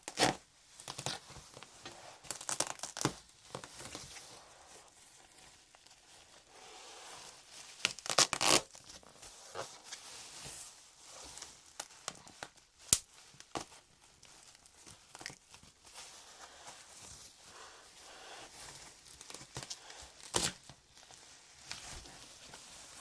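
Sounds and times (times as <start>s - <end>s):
packaging crinkling: 2.2s - 4.0s, 7.8s - 9.0s, 11.6s - 16.0s
packaging tearing: 2.3s - 3.2s, 7.8s - 8.8s, 20.2s - 20.8s.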